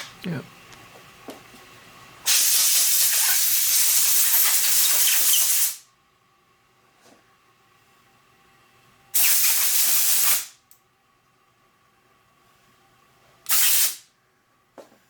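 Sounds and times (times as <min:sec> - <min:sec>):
spray nozzle hissing: 0:02.3 - 0:05.8, 0:09.2 - 0:10.5, 0:13.5 - 0:14.0.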